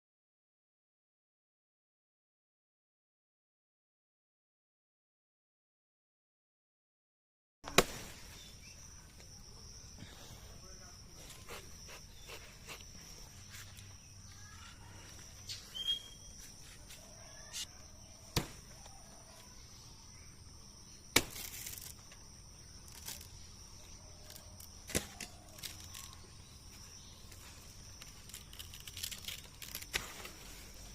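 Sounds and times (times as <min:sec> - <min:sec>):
blade chopping plant stem: 0:07.7 - 0:08.2, 0:18.3 - 0:18.8, 0:21.1 - 0:22.0, 0:24.8 - 0:25.5
rustling leaves: 0:07.7 - 0:09.8, 0:21.1 - 0:30.9
insects buzzing: 0:07.7 - 0:30.9.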